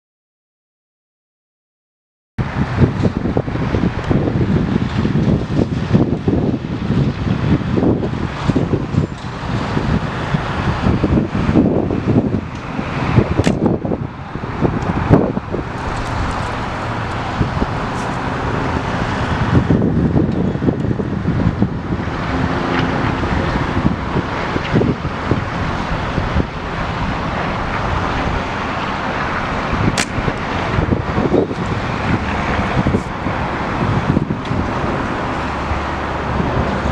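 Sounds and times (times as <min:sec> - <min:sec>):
wind buffeting microphone: 0:02.4 - 0:36.9
sharp click: 0:13.4 - 0:13.7, 0:30.0 - 0:30.2.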